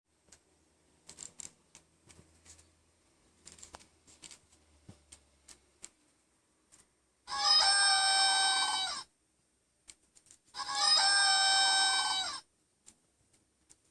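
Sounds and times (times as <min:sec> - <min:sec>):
toy book clicks and taps: 0:00.3 - 0:02.7, 0:03.4 - 0:06.0, 0:09.9 - 0:10.5.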